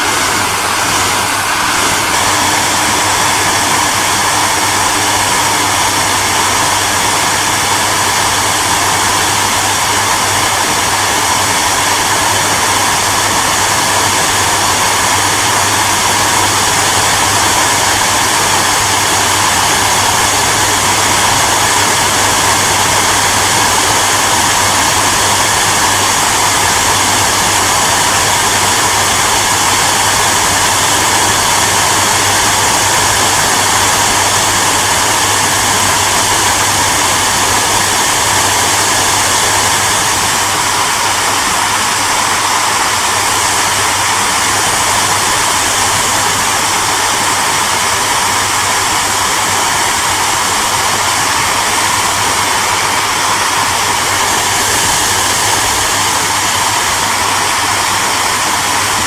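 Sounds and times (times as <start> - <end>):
hair dryer running: 0.0 - 59.0.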